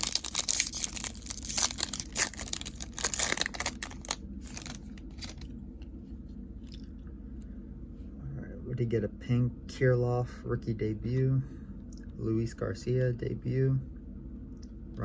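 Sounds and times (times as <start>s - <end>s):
card pack wrapper crinkling: 0.0s - 5.5s.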